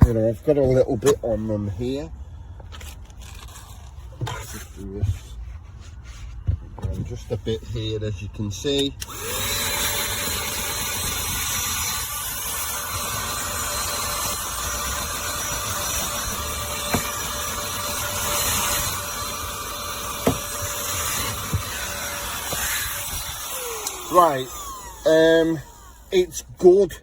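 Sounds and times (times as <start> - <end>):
handheld vacuum whining: 9.0 - 26.5.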